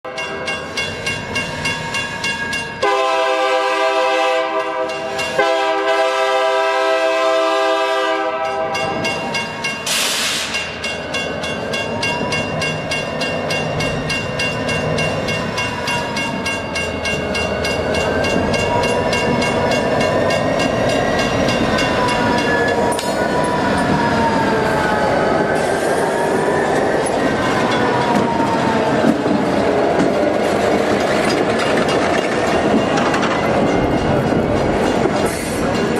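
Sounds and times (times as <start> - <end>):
train rumbling past: 0.1 - 35.9
locomotive horn blasts: 2.8 - 9.0
train wheels clacking: 8.4 - 24.1, 27.0 - 35.9.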